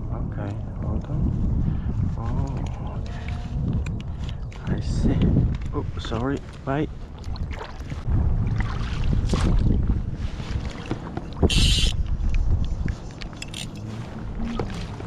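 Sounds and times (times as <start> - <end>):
wind rumbling on microphone: 0.0 - 15.0
water moving around boat: 5.4 - 15.0.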